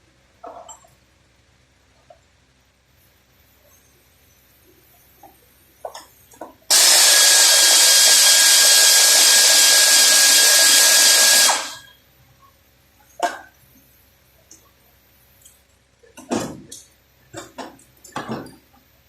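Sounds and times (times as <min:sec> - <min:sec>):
power tool running: 0:06.7 - 0:11.9.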